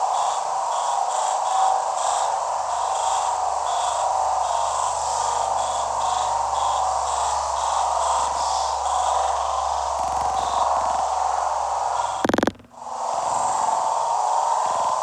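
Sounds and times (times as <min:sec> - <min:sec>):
cricket-like high chirps: 0:00.0 - 0:12.7
mid-pitched drone: 0:09.3 - 0:12.8.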